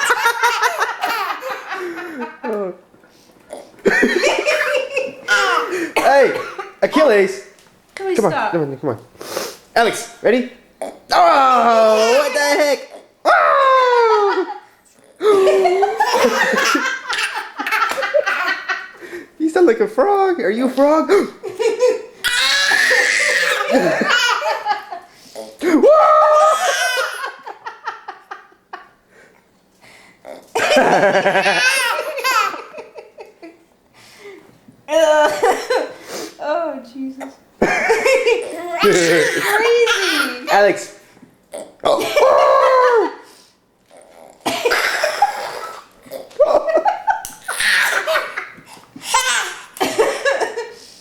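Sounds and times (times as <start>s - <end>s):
toddler laughing: 0.0s - 2.4s, 4.2s - 5.8s, 15.2s - 19.0s, 22.3s - 25.0s, 26.4s - 27.9s, 30.5s - 33.3s, 38.4s - 40.5s, 47.3s - 50.4s
loud laughter: 13.6s - 19.0s, 21.6s - 25.0s, 30.6s - 33.5s
toddler making croaky noise: 38.5s - 40.5s.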